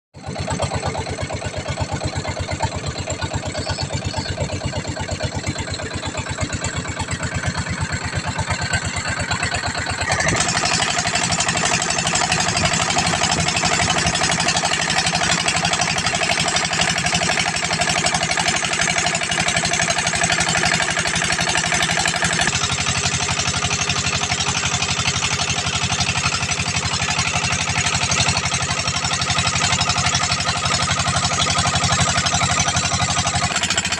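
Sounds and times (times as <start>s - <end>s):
small engine running: 0.2s - 33.9s.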